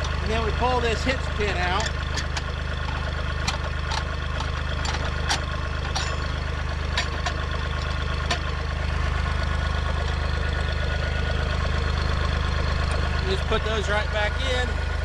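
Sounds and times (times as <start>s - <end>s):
metal hitch pins clinking: 0.0s - 9.1s
tractor engine idling: 0.0s - 15.0s.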